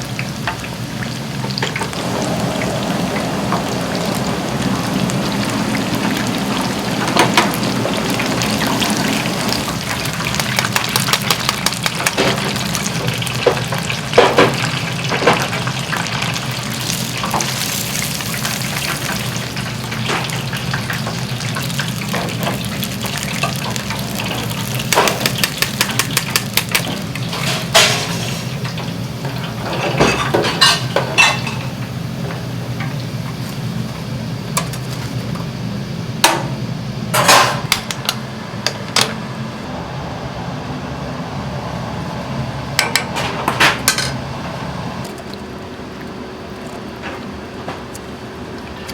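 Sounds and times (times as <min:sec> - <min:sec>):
food sizzling: 0:00.0 - 0:38.1
utensils clinking on a pan: 0:23.3 - 0:33.0.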